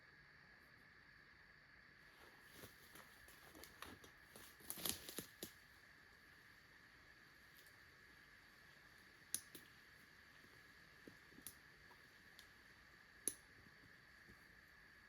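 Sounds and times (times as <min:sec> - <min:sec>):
faint steady high hum: 0:00.0 - 0:15.0
faint sharp clicks: 0:13.2 - 0:13.5.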